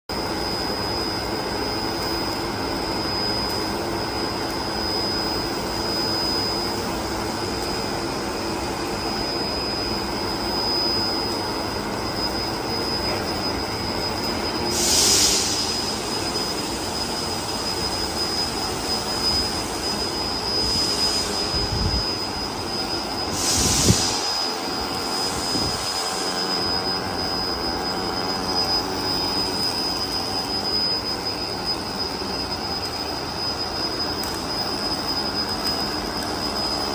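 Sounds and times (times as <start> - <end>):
welding hiss and hum: 0.1 - 36.9
louder bursts of hiss: 14.6 - 17.9, 19.8 - 27.3.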